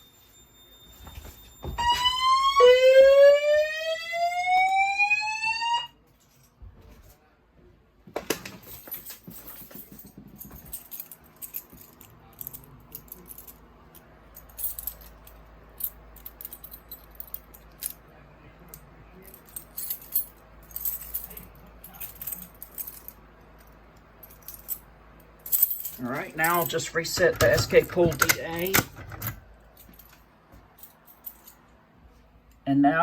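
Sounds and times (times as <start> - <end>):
keys jangling: 6.1 - 6.6, 8.5 - 18.0, 19.2 - 31.8
handling clunk: 25.5 - 30.2.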